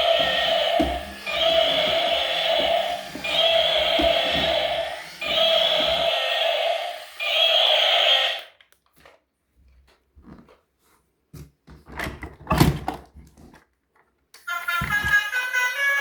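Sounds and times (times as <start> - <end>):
objects knocking and clattering: 0.0 - 6.0
steady pitched tone: 0.0 - 8.4.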